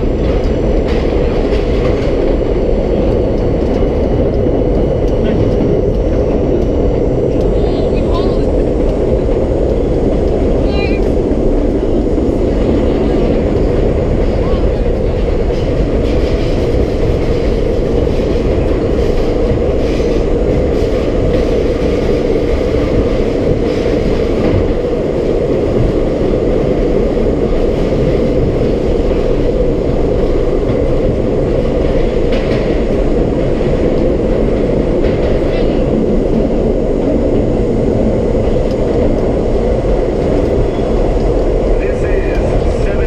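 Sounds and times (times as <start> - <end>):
subway car rumbling in tunnel: 0.0 - 43.0.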